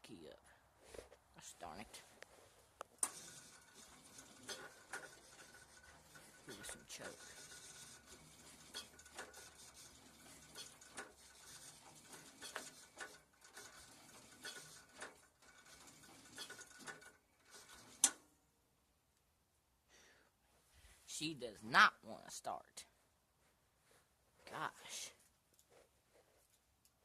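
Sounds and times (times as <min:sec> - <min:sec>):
clicks and rustles of controls: 0:02.0 - 0:18.4.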